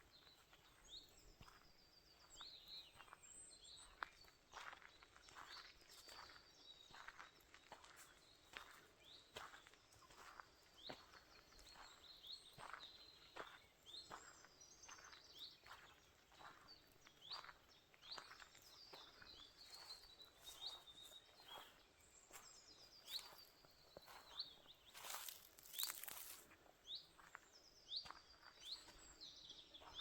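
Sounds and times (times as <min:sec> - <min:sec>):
small birds chirping: 0:00.0 - 0:30.0
footsteps on forest floor: 0:00.2 - 0:30.0.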